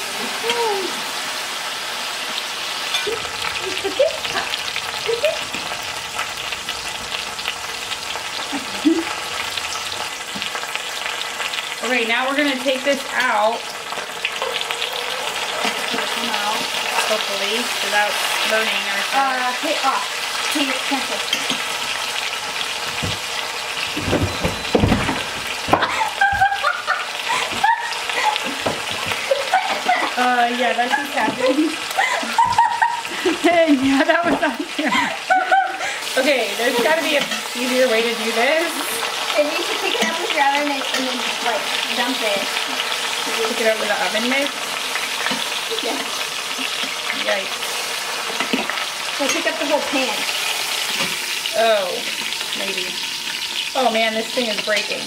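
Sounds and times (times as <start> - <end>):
chicken sizzling in oil: 0.0 - 55.0
utensils knocking against pot: 22.8 - 26.6, 28.5 - 29.3.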